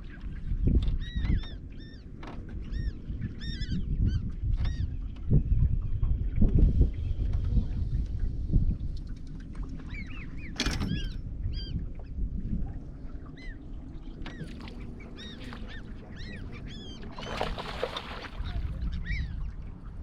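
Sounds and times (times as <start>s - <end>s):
low rumble of boat and water: 0.0s - 20.0s
birds calling: 9.8s - 12.1s, 13.2s - 19.6s
splash or knock: 17.3s - 18.4s.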